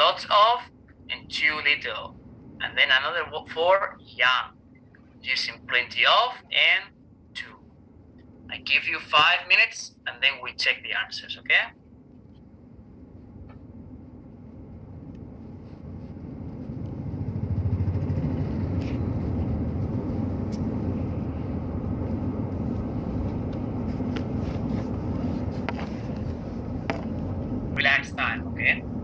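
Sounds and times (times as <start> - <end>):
car rumbling on the move: 13.4 - 27.8.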